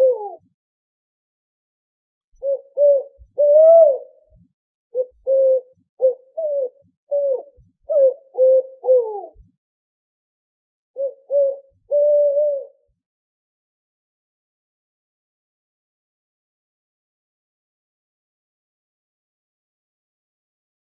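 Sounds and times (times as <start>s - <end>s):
owl hooting: 0.0s - 0.4s, 2.4s - 4.1s, 5.0s - 9.4s, 11.0s - 12.8s.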